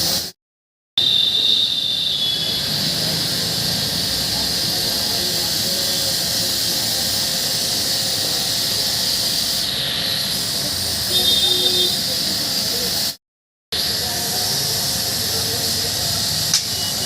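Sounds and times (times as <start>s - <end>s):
high-pitched hissing: 0.0s - 0.4s, 1.0s - 13.2s, 13.8s - 17.0s
thin whistle: 1.0s - 3.0s, 11.1s - 12.1s, 16.6s - 17.0s.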